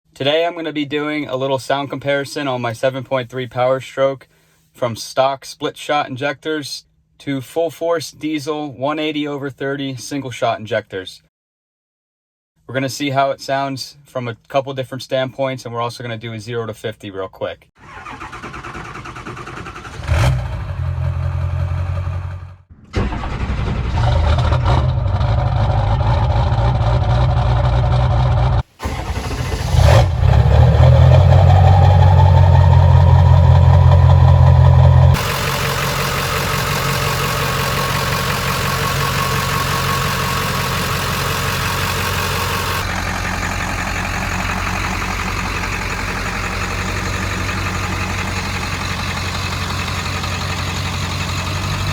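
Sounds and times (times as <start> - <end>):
diesel engine starting and running: 17.8 - 51.9
turbo whine: 25.5 - 51.9.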